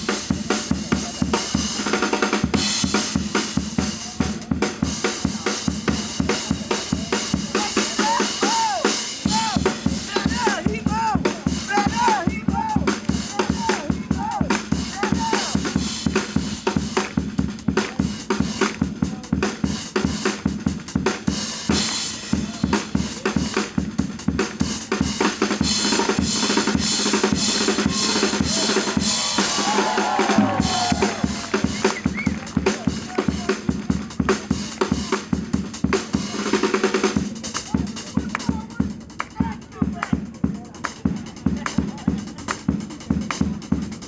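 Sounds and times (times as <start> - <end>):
bass drum and snare beat: 0.0 - 44.0
drum kit music: 0.0 - 44.0
cymbals washing: 24.7 - 37.6.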